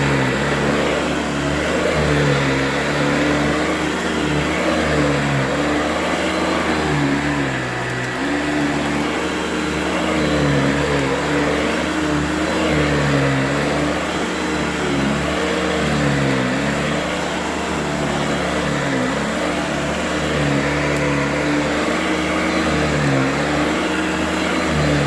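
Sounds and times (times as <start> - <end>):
upright vacuum running: 0.0 - 25.0.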